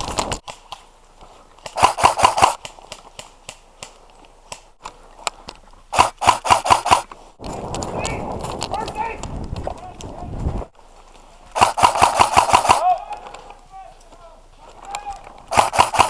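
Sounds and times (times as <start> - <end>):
airsoft rifle firing: 1.6 - 3.6, 5.9 - 7.1, 11.6 - 13.0, 15.5 - 16.0.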